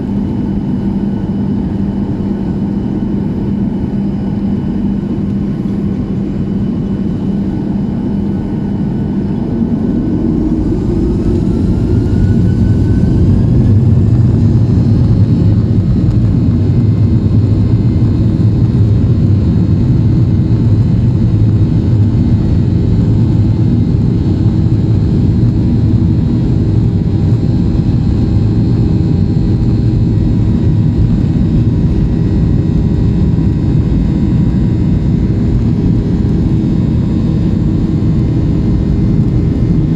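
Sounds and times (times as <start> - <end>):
jet engines spooling up: 0.4 - 18.3.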